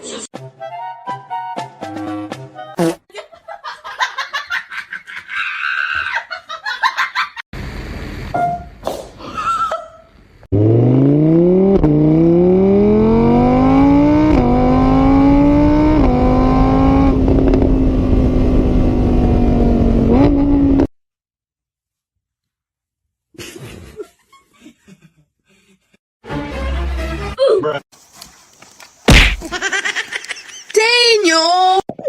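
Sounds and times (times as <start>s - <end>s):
engine accelerating through gears: 10.5s - 20.9s.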